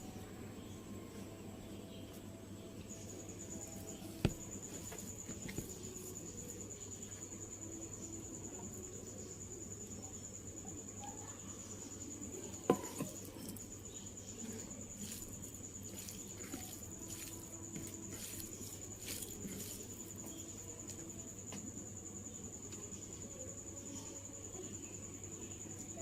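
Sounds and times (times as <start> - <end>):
cricket trill: 0.0 - 26.0
crunchy chewing: 12.6 - 21.2.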